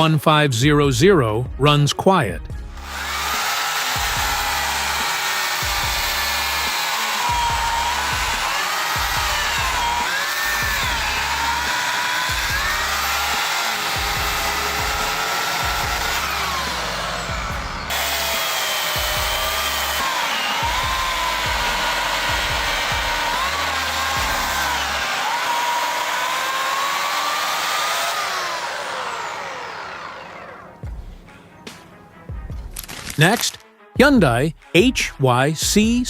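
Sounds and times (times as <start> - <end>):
electric chainsaw cutting wood: 2.8 - 31.4.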